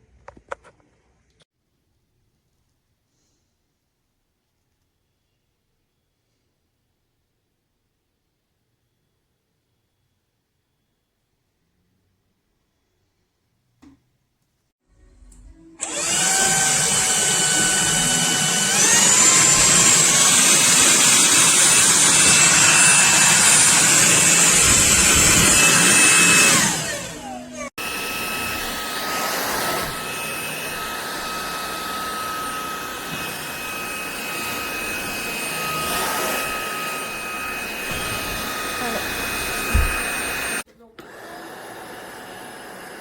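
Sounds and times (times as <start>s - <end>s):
stick vacuum motor whine: 15.8s - 43.0s.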